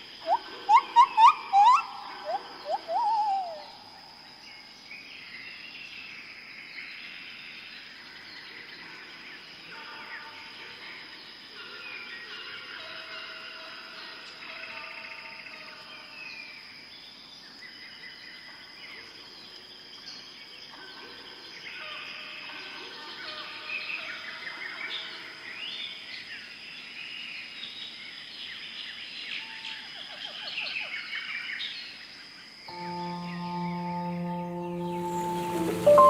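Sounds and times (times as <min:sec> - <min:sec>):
birds chirping and whistling: 0:00.2 - 0:03.7
high insect drone: 0:32.7 - 0:36.0.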